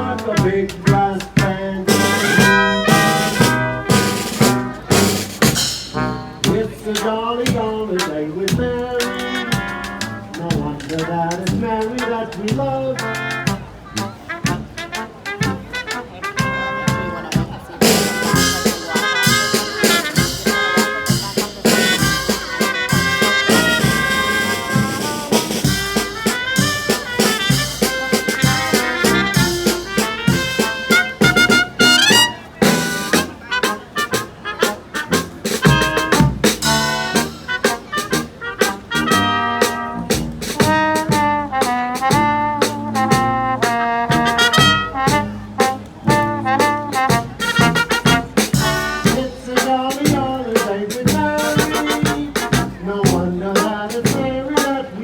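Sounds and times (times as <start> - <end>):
brass band playing: 0.0 - 55.0.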